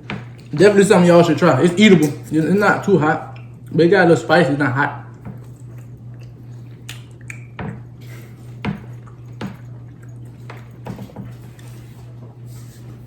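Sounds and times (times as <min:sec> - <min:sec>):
low electrical hum: 0:00.0 - 0:13.0
person chewing: 0:05.1 - 0:10.8.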